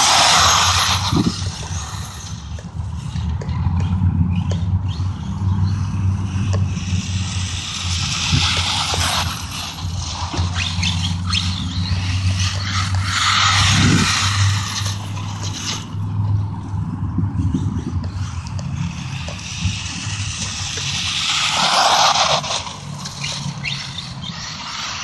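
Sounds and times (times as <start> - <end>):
rc car electric motor whine: 0.0 - 25.0
tyres scrabbling: 6.6 - 16.6, 17.5 - 25.0.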